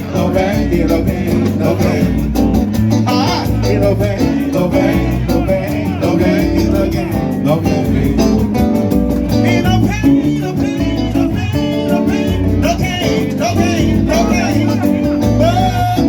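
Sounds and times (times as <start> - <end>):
live band music: 0.0 - 16.0
person singing: 9.2 - 16.0.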